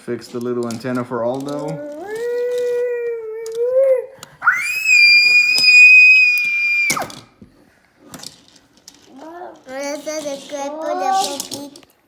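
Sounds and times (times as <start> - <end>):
child's high-pitched squeal: 1.9 - 7.1.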